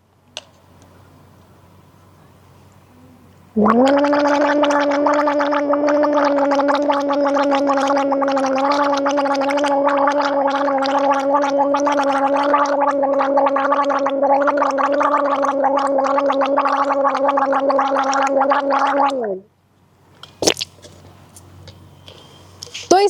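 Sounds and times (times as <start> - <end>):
woman gargling: 3.6 - 19.5.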